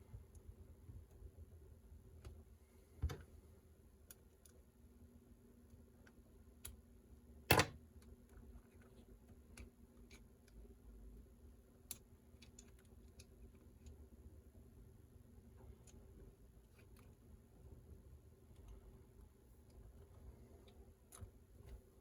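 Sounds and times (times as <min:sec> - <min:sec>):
screwdriver and small parts clicking: 0:11.8 - 0:14.0.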